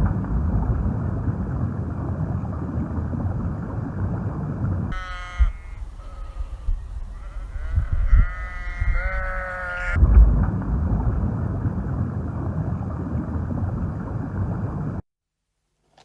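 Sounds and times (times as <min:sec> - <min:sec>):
rough rumbling noise: 0:00.0 - 0:15.0
wind rumble on microphone: 0:00.0 - 0:15.0
animal bleating: 0:04.9 - 0:10.0.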